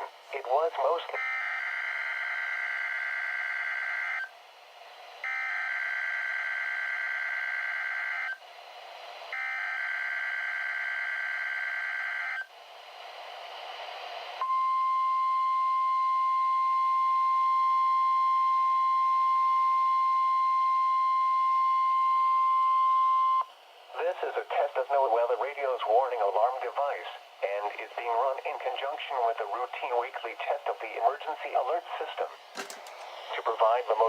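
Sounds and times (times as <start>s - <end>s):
radio hiss: 0.0s - 1.2s, 23.9s - 34.0s
steady warning alarm tone: 1.2s - 4.3s, 5.2s - 8.4s, 9.3s - 12.4s.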